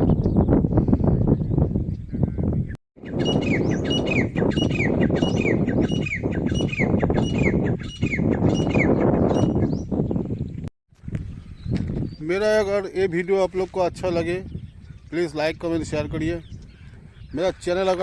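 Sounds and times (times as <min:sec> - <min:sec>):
bird calling: 0:03.0 - 0:10.0.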